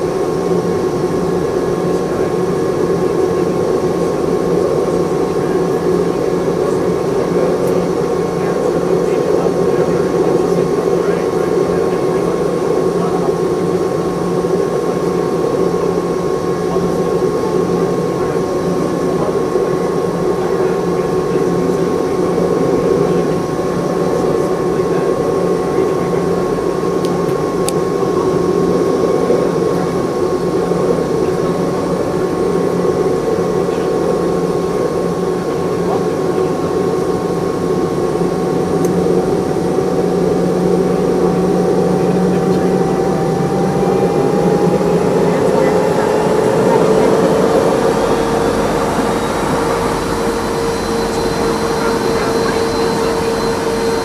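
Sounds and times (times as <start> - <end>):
jet engines rumbling in cabin: 0.0 - 54.0
steady whining tones: 0.0 - 54.0.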